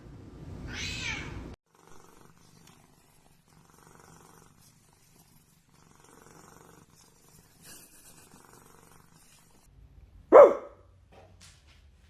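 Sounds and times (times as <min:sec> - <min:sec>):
cat purring: 0:01.7 - 0:09.7.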